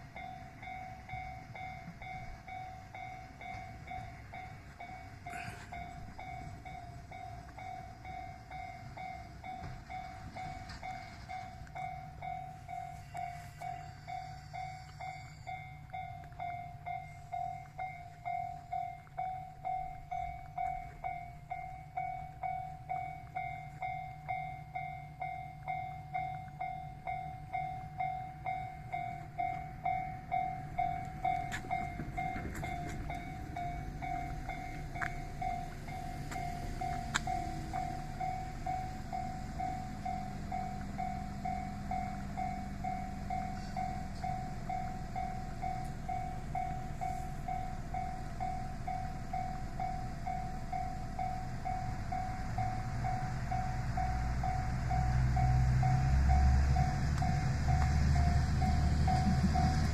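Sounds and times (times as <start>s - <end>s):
level crossing bell dinging: 0.1s - 59.9s.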